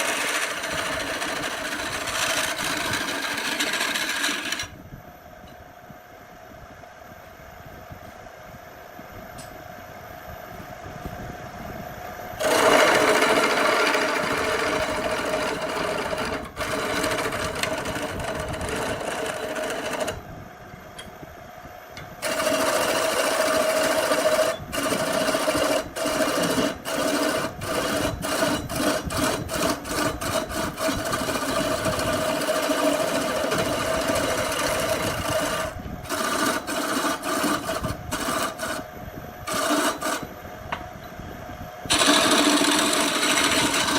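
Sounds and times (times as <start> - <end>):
power tool whining: 0.0 - 4.8, 12.4 - 20.2, 22.2 - 40.3, 41.8 - 43.9.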